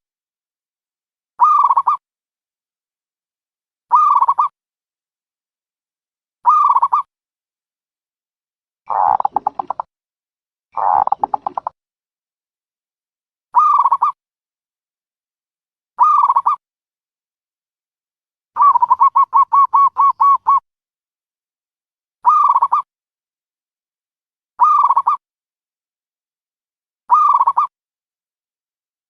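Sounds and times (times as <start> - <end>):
dove cooing: 8.9 - 9.8, 10.8 - 11.7, 18.6 - 20.6.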